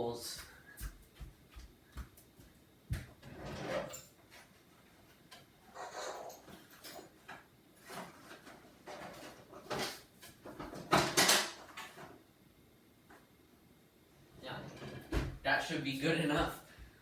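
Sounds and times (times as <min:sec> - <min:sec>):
rustling and clattering objects: 0:00.9 - 0:12.2.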